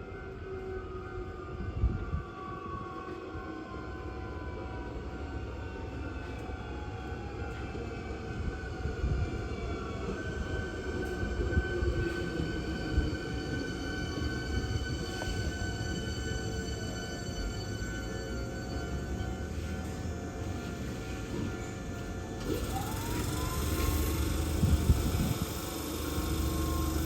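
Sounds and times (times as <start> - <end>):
electric train rumble: 0.0 - 27.0
train motor whine: 3.6 - 27.0.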